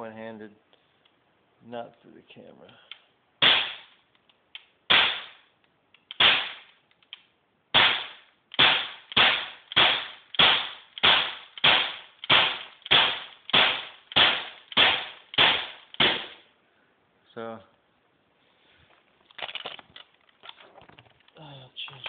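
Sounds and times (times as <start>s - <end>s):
air pistol shots popping: 3.4s - 3.9s, 4.9s - 5.4s, 6.1s - 6.8s, 7.7s - 16.5s.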